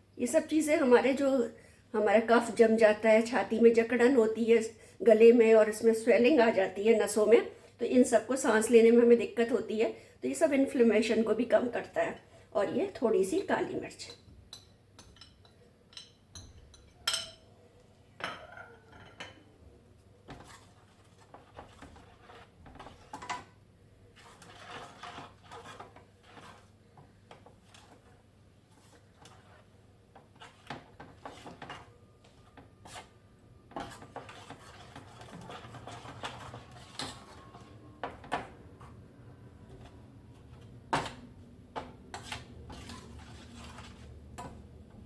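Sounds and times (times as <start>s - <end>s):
metal spoon scraping pots: 20.3s - 44.7s.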